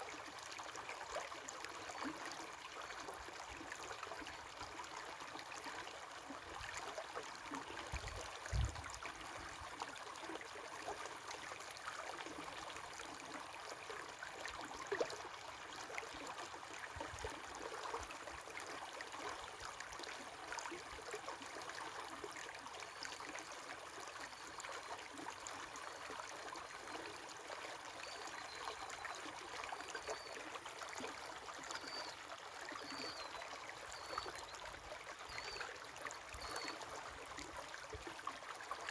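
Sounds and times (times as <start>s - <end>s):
river water flowing: 0.3s - 38.9s
faint bird chirps: 32.8s - 34.5s.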